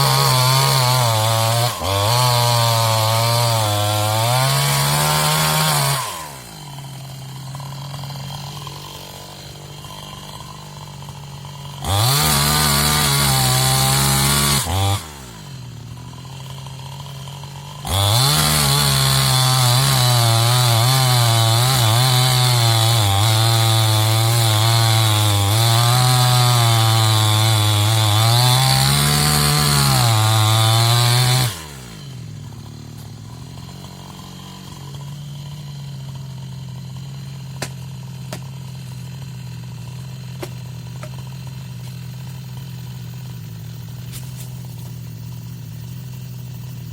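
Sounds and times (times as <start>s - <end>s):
chainsaw cutting wood: 0.0s - 46.9s
chainsaw idling and revving: 0.0s - 46.9s.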